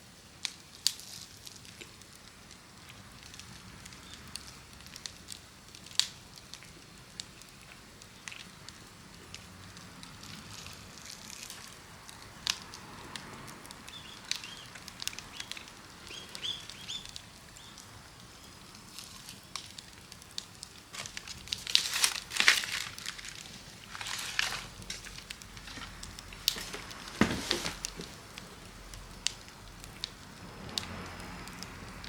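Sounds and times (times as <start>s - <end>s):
campfire crackling and popping: 0.0s - 32.0s
crunching rustling noise: 18.6s - 31.6s.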